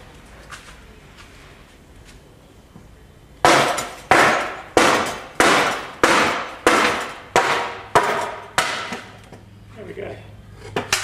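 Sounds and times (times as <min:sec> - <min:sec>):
mallet striking wood: 0:03.4 - 0:09.1.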